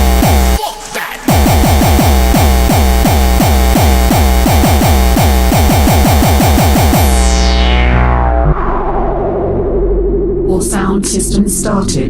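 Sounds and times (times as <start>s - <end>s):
distorted kick drum pounding: 0.0s - 0.6s, 1.3s - 7.6s
noisy synth layer: 0.0s - 0.6s, 1.3s - 12.0s
low drone: 6.6s - 12.0s.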